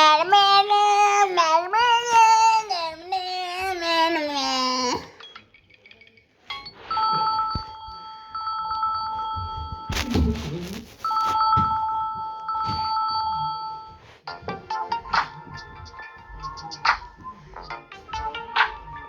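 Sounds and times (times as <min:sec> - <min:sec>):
two-tone phone ringtone: 0:05.2 - 0:09.9, 0:11.1 - 0:14.0.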